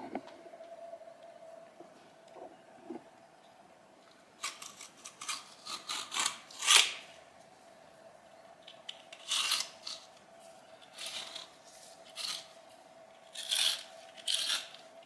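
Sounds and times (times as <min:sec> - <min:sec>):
knife blade scraping grout: 0:13.4 - 0:14.8.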